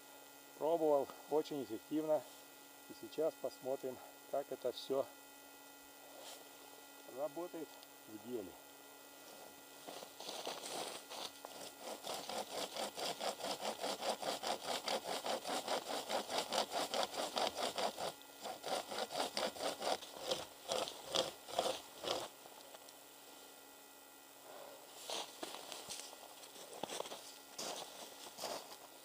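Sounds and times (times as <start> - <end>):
hand saw cutting wood: 10.2 - 22.4.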